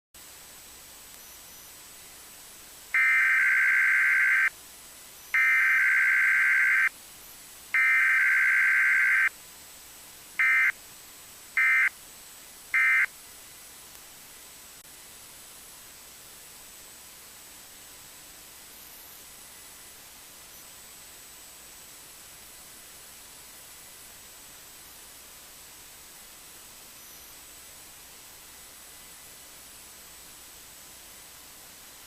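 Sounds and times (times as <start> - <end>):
low steady hiss: 0.2 - 32.0
warbling two-tone data bursts: 2.9 - 4.5, 5.3 - 6.9, 7.8 - 9.3, 10.4 - 10.8, 11.6 - 12.0, 12.7 - 13.1.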